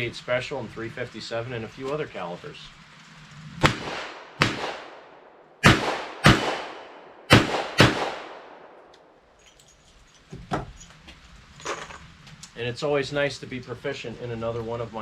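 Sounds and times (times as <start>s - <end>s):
revolver shots with echo: 3.6s - 8.9s.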